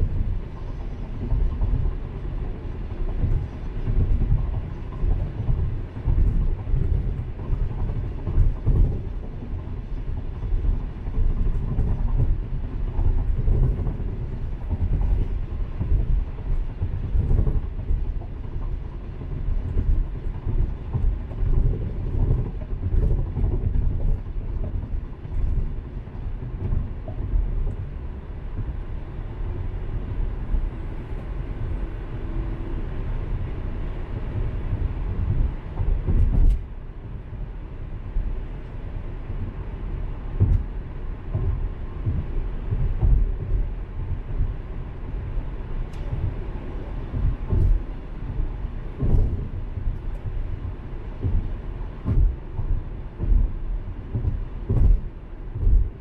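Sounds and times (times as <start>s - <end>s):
car tyres and engine rumble: 0.0s - 56.0s.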